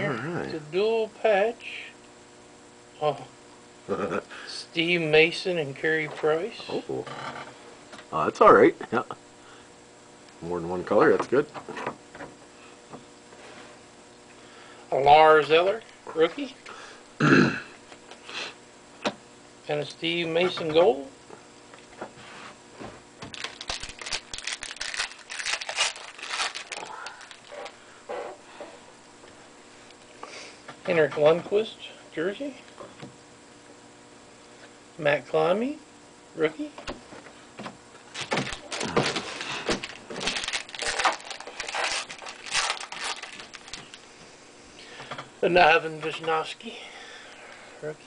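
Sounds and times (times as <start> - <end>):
card packs crinkling and rustling: 23.2 - 27.8, 38.1 - 44.1.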